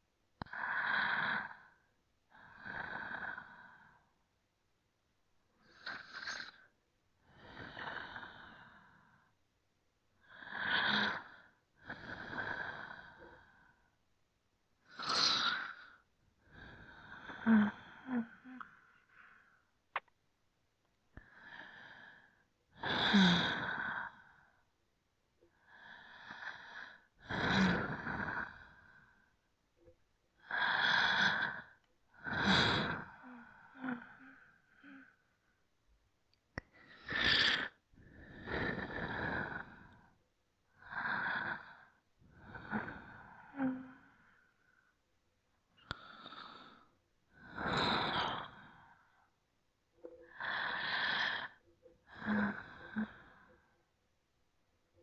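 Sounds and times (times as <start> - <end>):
person breathing deeply: 50.3 - 53.7.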